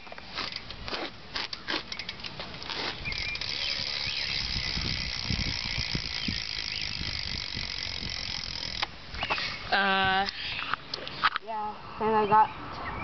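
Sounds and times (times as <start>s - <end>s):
bike hub ratchet clicking: 0.4s - 0.7s, 1.4s - 9.0s.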